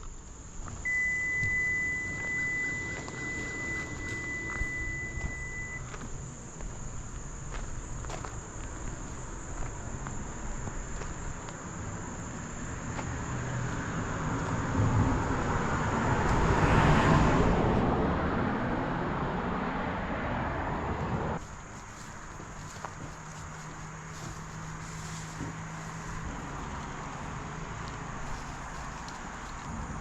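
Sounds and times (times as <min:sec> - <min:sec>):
insects droning: 0:00.0 - 0:30.0
vehicle passing by: 0:11.8 - 0:21.4, 0:22.6 - 0:30.0.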